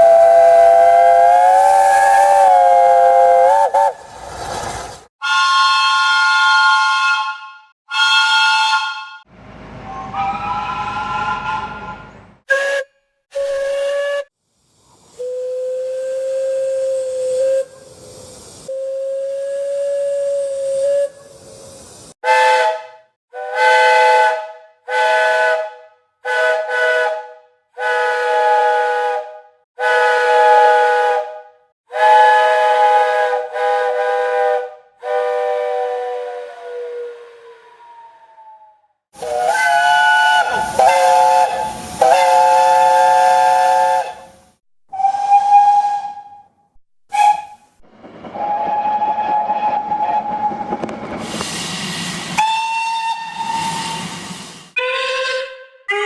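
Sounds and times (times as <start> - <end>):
steam hiss: 0.0 - 5.1, 13.4 - 22.2, 39.2 - 44.5, 47.2 - 54.8
steam locomotive whistle: 0.0 - 14.3, 15.1 - 21.6, 22.2 - 46.5, 47.1 - 56.0.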